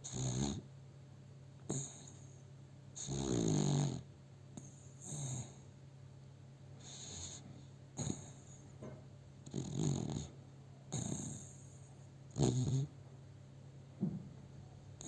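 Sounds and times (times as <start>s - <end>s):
dog snoring: 0.0s - 0.7s, 1.6s - 2.4s, 3.0s - 5.7s, 6.8s - 8.7s, 9.4s - 13.0s.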